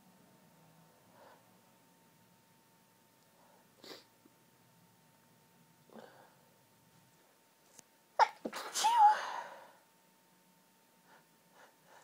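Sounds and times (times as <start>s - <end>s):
high-pitched sneeze: 8.2s - 9.4s.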